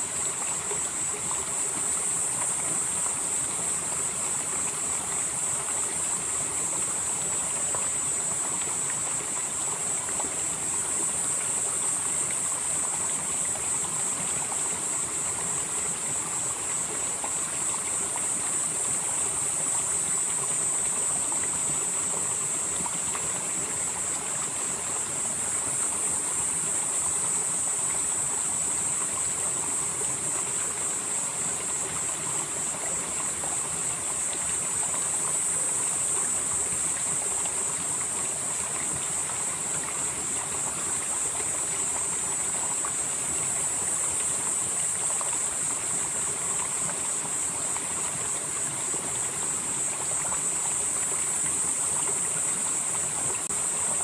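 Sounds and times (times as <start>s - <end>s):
stream flowing: 0.0s - 54.0s.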